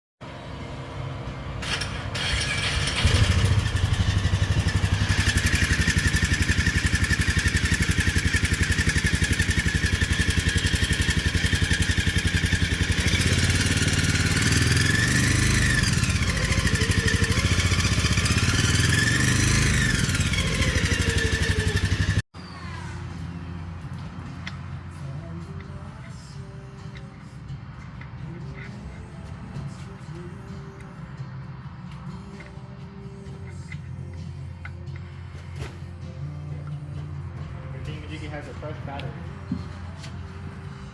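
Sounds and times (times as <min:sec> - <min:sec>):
engine running and revving: 0:00.3 - 0:22.2.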